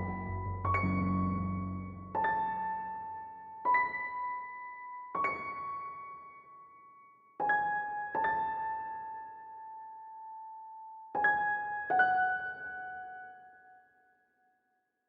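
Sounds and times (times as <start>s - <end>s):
slow piano notes: 0.0s - 6.4s.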